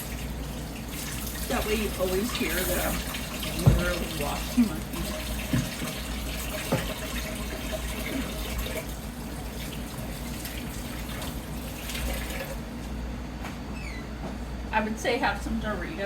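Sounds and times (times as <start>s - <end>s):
hands washing under water: 0.0s - 12.7s
tap water running: 0.0s - 13.0s.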